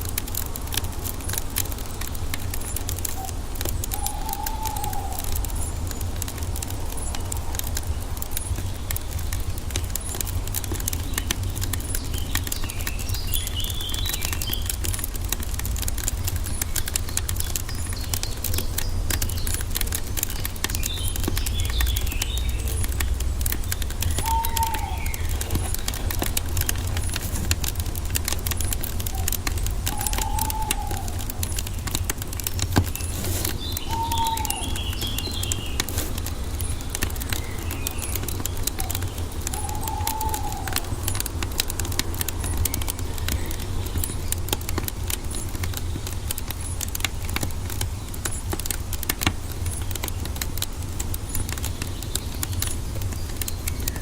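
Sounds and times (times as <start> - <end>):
wood fire crackling: 0.0 - 54.0
bird calling: 2.5 - 7.5, 16.3 - 44.4
bird twittering: 2.6 - 5.8, 20.3 - 32.1, 32.8 - 41.0.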